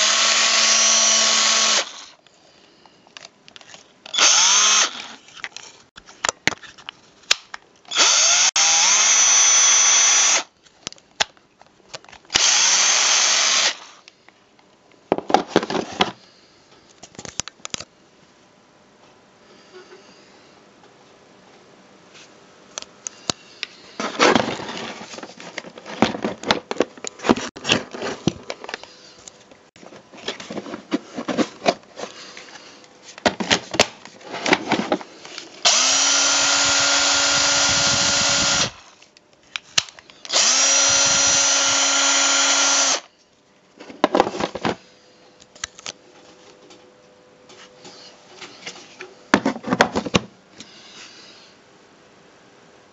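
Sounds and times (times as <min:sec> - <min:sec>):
cordless drill motor whine: 0:00.0 - 0:02.2, 0:04.1 - 0:05.2, 0:07.9 - 0:10.5, 0:12.3 - 0:14.1, 0:35.6 - 0:39.0, 0:40.2 - 0:43.1.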